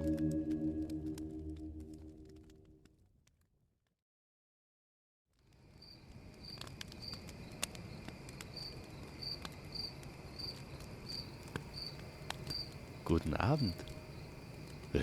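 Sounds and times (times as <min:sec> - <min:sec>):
campfire crackling: 0:00.0 - 0:03.4, 0:05.4 - 0:15.0
low fire rumble: 0:00.5 - 0:03.1, 0:05.4 - 0:15.0
crickets chirping: 0:11.1 - 0:15.0.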